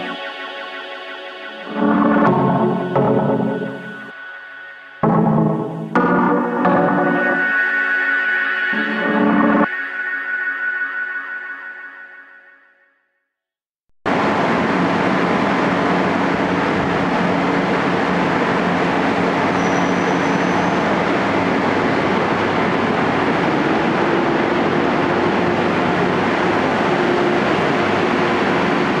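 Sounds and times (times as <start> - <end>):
high-speed train rushing: 0.0 - 4.2, 14.1 - 29.0
low humming tones: 0.0 - 7.7.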